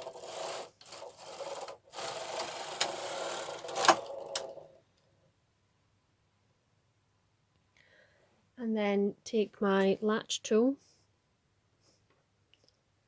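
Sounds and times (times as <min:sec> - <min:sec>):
knitting machine carriage sliding: 0:00.0 - 0:04.8.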